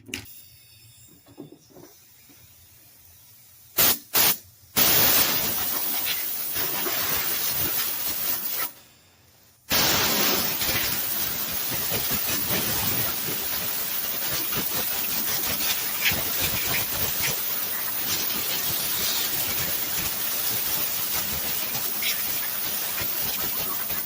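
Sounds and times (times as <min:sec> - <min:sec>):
air blower blasting: 0:03.8 - 0:08.7, 0:09.7 - 0:24.0.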